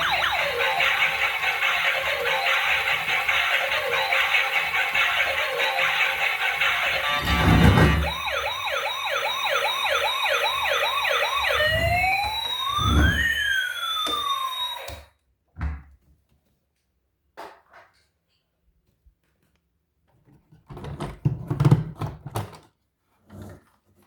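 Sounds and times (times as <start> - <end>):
toy electronic siren: 0.0 - 15.1.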